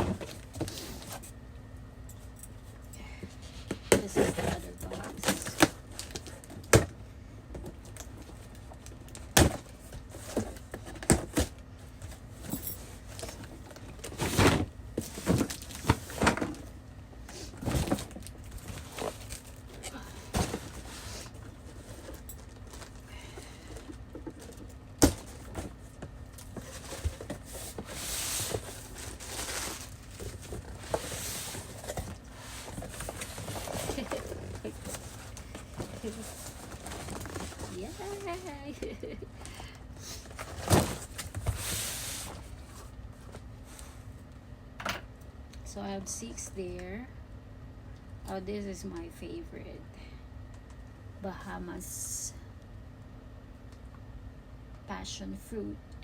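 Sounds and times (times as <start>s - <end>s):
packaging rustling: 23.6s - 38.6s.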